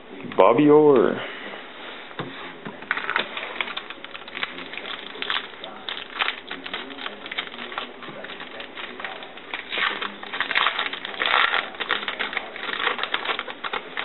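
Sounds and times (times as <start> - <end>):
foil card pack crinkling: 2.9 - 14.0.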